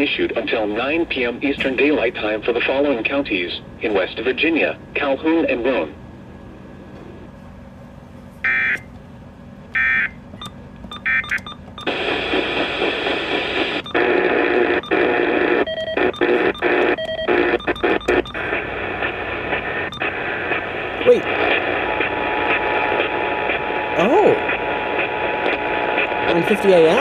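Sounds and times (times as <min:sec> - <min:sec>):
loud radio static: 0:00.0 - 0:05.7, 0:11.9 - 0:27.0
faint steady tones: 0:00.0 - 0:27.0
squawking data bursts: 0:09.8 - 0:27.0
radio receiver hiss: 0:11.8 - 0:26.6.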